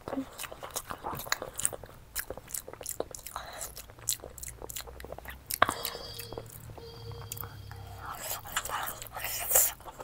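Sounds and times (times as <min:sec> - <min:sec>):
wet chewing: 0:00.0 - 0:06.7.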